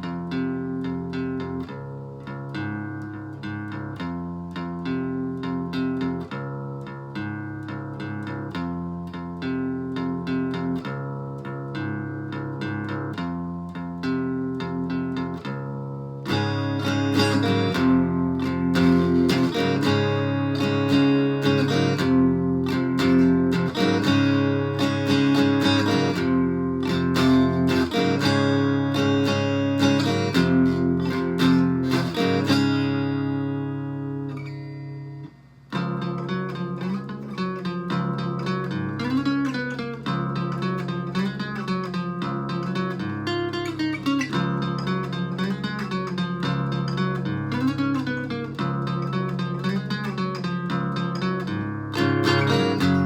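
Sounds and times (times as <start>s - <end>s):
distorted acoustic guitar: 0.0s - 53.0s.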